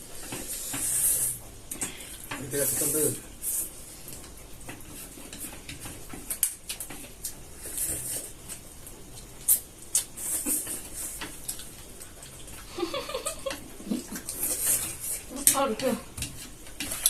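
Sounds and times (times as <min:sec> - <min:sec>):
slurping and chewing: 0:00.0 - 0:17.0
chopsticks tapping plates: 0:04.1 - 0:07.4, 0:13.2 - 0:17.0.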